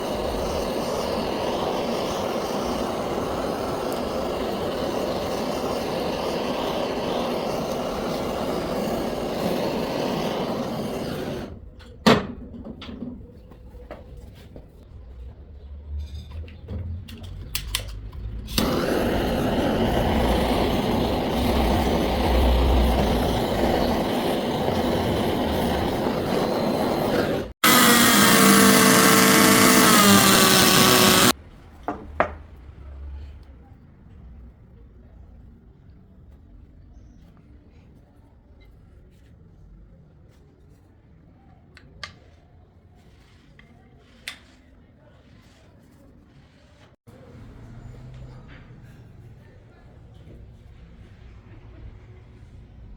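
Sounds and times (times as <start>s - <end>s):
power tool whining: 0.0s - 11.5s, 18.6s - 31.4s
power tools working wood: 0.0s - 11.5s, 18.6s - 31.4s.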